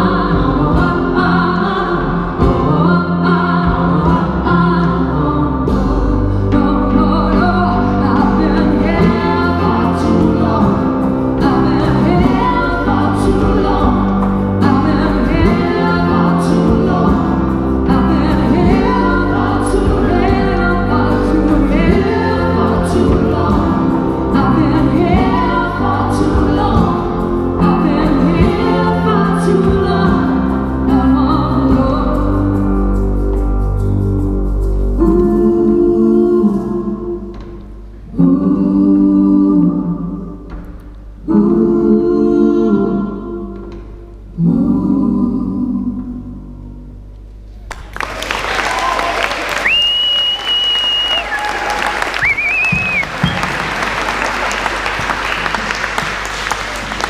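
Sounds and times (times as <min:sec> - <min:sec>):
person singing: 0:00.0 - 0:33.5, 0:34.8 - 0:40.5
live band playing: 0:00.0 - 0:38.0, 0:47.7 - 0:57.0.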